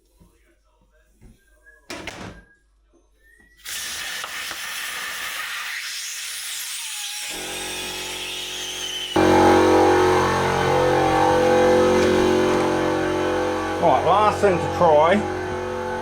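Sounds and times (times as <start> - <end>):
compressed air hissing: 3.6 - 9.4
compressor motor humming: 7.3 - 16.0.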